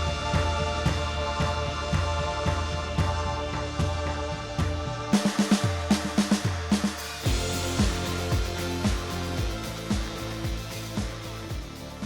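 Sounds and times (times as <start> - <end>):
music with kick drum beat: 0.0 - 12.0.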